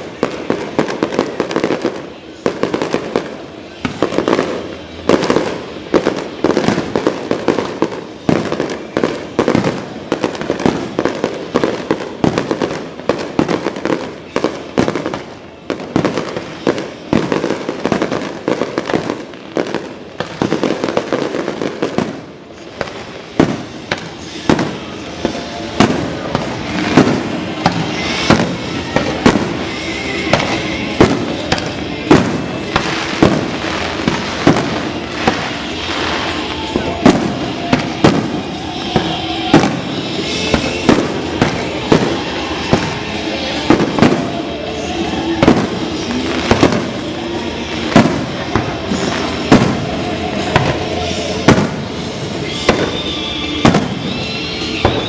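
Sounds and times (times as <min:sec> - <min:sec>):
fireworks bangs: 0:00.0 - 0:55.0
fireworks crackling: 0:00.0 - 0:55.0.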